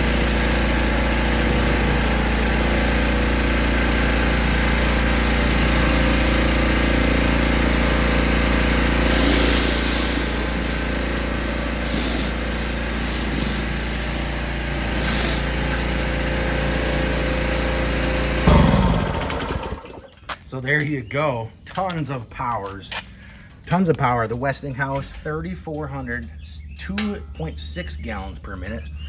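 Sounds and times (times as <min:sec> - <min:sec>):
pressure washer engine running: 0:00.0 - 0:20.2
hiss: 0:08.4 - 0:14.1.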